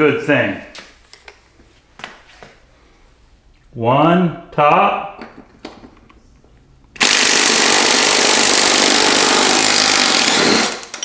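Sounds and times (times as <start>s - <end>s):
impact gun running: 7.0s - 11.0s.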